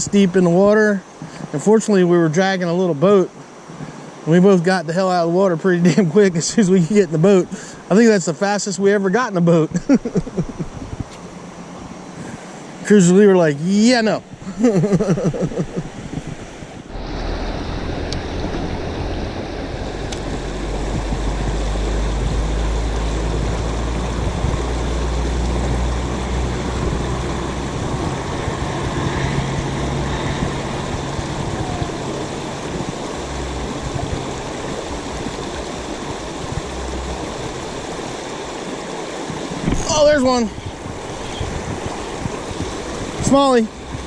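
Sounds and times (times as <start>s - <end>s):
river water running over rocks: 0.0s - 44.0s
wind rumbling on microphone: 9.7s - 44.0s.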